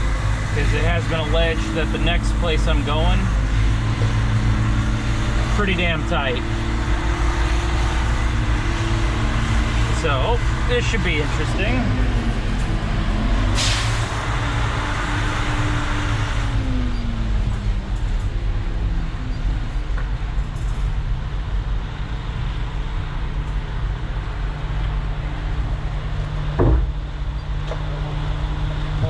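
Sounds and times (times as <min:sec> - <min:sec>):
truck diesel engine running: 0:00.0 - 0:29.0
hiss burst: 0:13.6 - 0:14.2
sharp knock: 0:26.6 - 0:27.0.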